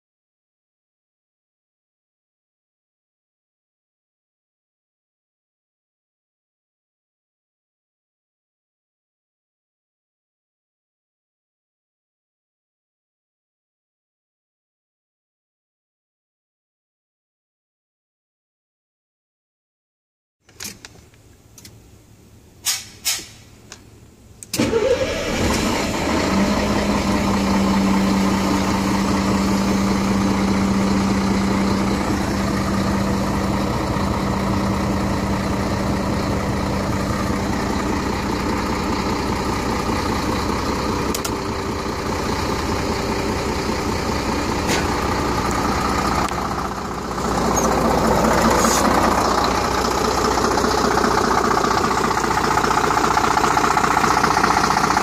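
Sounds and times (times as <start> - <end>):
diesel truck engine starting: 21.6 - 55.0
clicks: 41.1 - 41.4.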